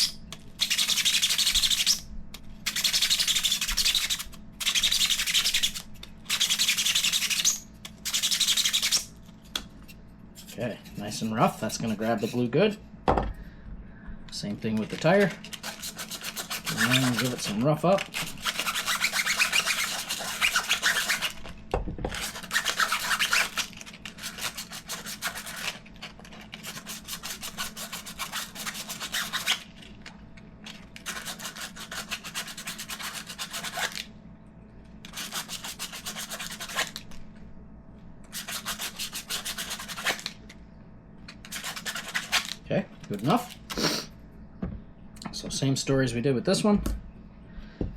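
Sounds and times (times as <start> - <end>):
sandpaper scrubbing rubber tire: 15.6 - 17.6.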